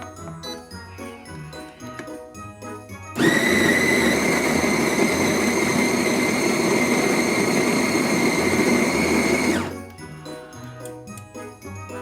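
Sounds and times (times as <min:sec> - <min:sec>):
light background music: 0:00.0 - 0:12.0
coffee grinder whining: 0:03.2 - 0:09.9.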